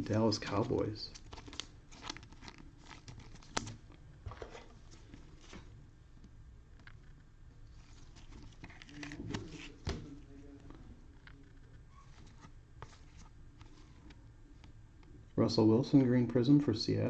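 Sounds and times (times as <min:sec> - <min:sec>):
trading cards rustling and clicking: 0:00.0 - 0:05.8, 0:06.9 - 0:14.7.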